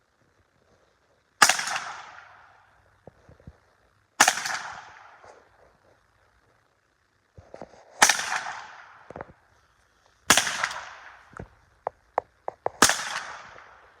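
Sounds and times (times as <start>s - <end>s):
rifle shots with echo: 1.4s - 2.8s, 4.2s - 5.4s, 8.0s - 9.3s, 10.3s - 11.6s, 12.6s - 14.0s.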